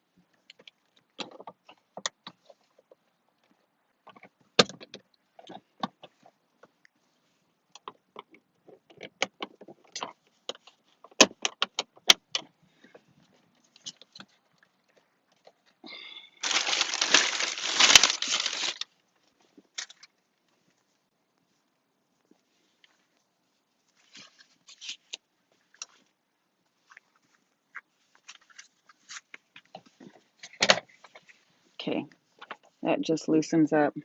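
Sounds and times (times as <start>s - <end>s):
plastic cover rattling and scraping: 16.4s - 18.9s.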